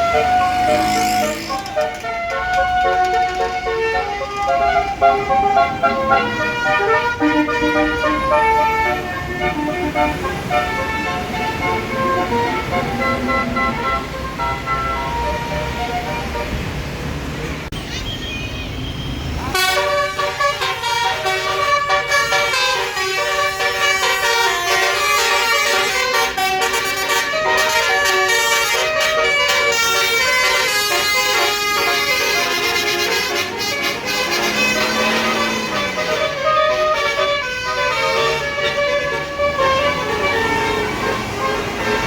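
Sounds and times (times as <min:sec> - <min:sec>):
multi-tone bus air horn melody: 0:00.0 - 0:16.7, 0:19.5 - 0:42.0.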